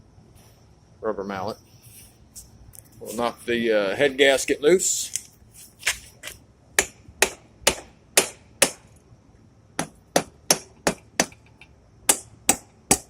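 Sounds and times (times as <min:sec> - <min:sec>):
rubber mallet striking metal: 0:06.8 - 0:08.8, 0:09.8 - 0:11.5, 0:12.1 - 0:13.0.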